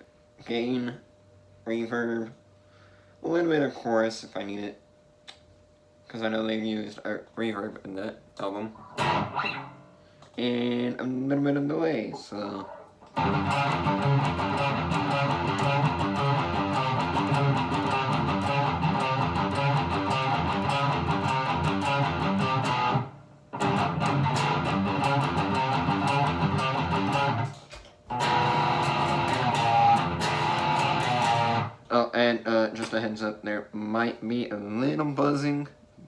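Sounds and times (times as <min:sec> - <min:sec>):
electric guitar metal riff: 0:08.7 - 0:10.0, 0:13.1 - 0:31.8.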